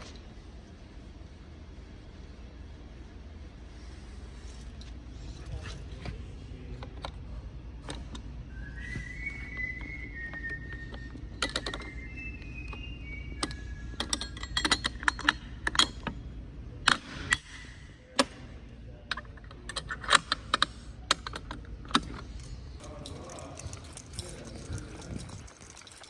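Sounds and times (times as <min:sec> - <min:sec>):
sharp clicks and clinks: 0:13.4 - 0:16.2, 0:19.1 - 0:26.0.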